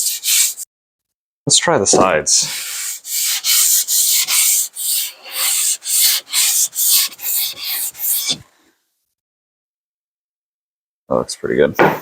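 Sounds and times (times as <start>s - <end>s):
metal plane scraping on sandpaper: 0.0s - 0.6s, 2.5s - 8.4s.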